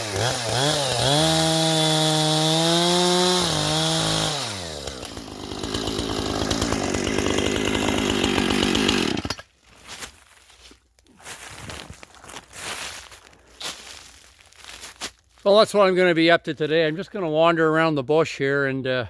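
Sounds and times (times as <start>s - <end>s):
chainsaw engine revving and idling: 0.0s - 9.5s.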